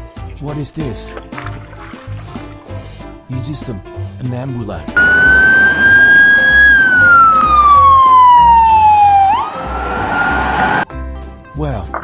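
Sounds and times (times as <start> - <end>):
background music with steady beat: 0.0 - 12.0
ambulance siren wailing: 5.0 - 10.9.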